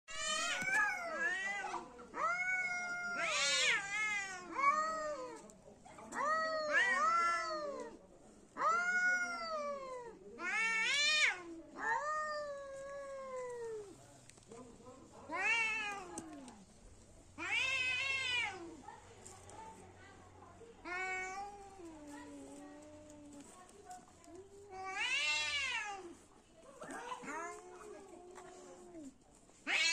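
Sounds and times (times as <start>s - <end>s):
cats yowling in a fight: 0.1s - 5.4s, 6.1s - 8.0s, 8.6s - 13.9s, 15.3s - 16.6s, 17.4s - 18.8s, 20.8s - 23.6s, 24.7s - 26.2s, 26.8s - 29.9s.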